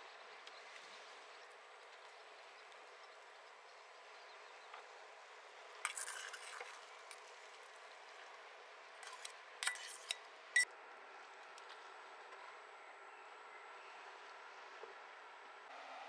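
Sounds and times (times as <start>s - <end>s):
utensils scraping a dish: 5.9s - 6.8s, 9.0s - 10.2s.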